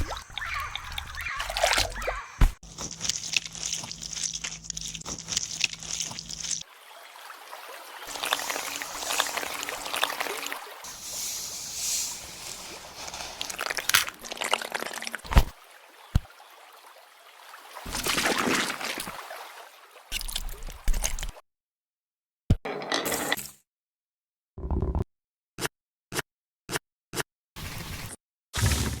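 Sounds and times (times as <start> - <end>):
water sloshing and trickling: 0.0 - 21.4.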